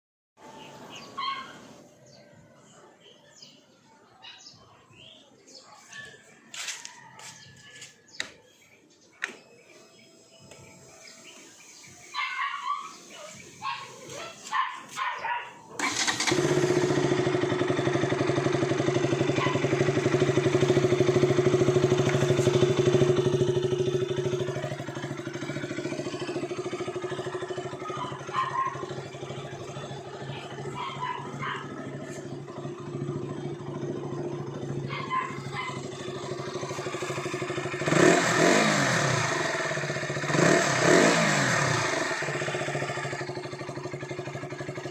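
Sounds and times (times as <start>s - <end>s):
motorcycle engine starting and idling: 15.6s - 44.9s.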